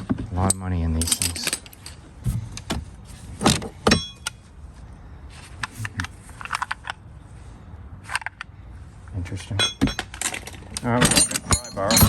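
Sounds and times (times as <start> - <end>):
metal hand tools clinking: 1.0 - 2.0, 9.6 - 12.0.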